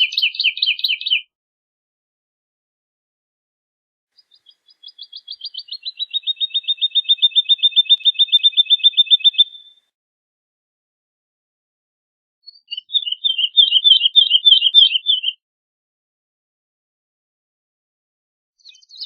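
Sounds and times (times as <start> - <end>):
bird singing repeated notes: 0.0 - 1.3, 4.2 - 9.8, 12.4 - 15.4, 18.6 - 19.0.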